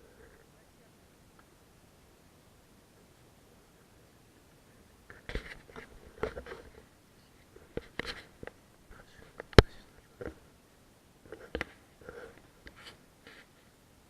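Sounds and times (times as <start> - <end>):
rustling: 4.6 - 10.5, 11.2 - 13.8
small clicks and knocks: 11.3 - 12.8.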